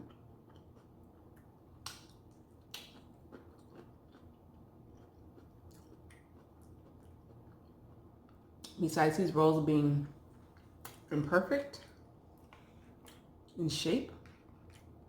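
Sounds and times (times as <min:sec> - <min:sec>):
faint chewing: 0:00.0 - 0:08.8, 0:11.8 - 0:15.0.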